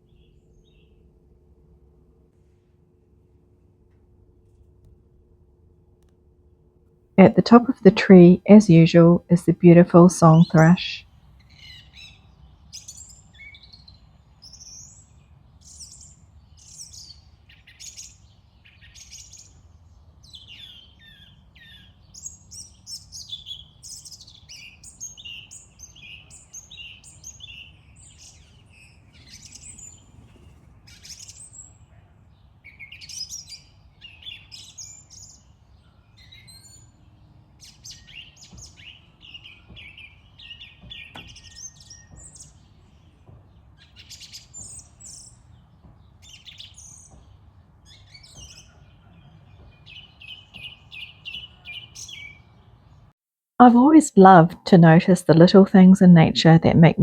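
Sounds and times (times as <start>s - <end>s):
thrush singing: 7.2s - 11.0s.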